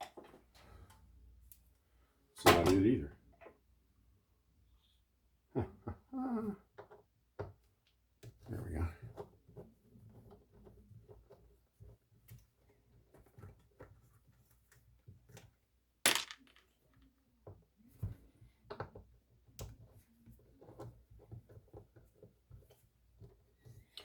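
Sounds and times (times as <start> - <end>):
clinks of small metal screws: 16.1 - 16.7.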